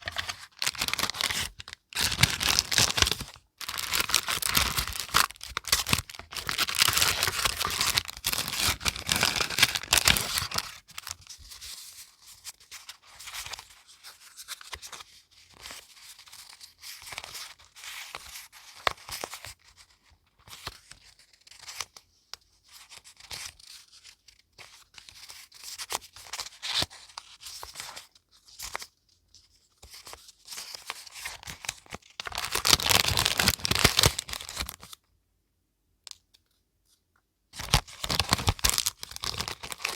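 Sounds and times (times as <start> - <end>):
paper tearing and crinkling: 0.0 - 11.1
paper rustling: 0.0 - 12.6.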